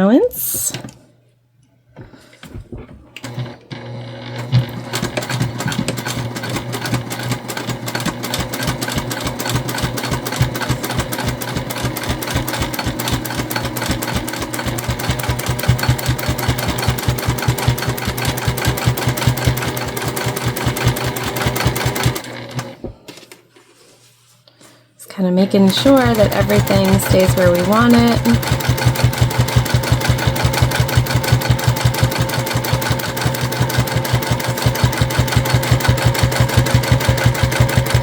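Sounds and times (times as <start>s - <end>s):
sewing machine stitching: 3.2s - 22.8s, 25.5s - 38.0s.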